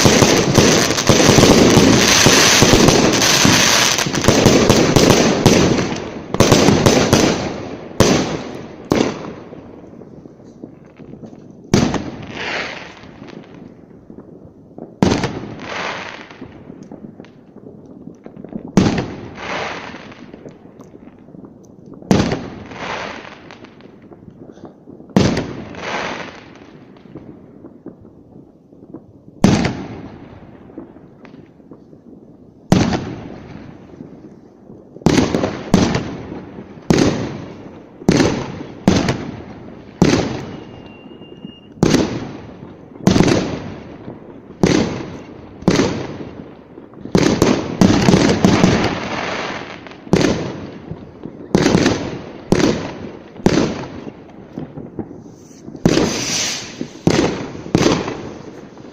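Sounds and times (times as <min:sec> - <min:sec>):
fireworks exploding with crackle: 0:00.0 - 0:58.9
short steady whistle: 0:40.4 - 0:41.8.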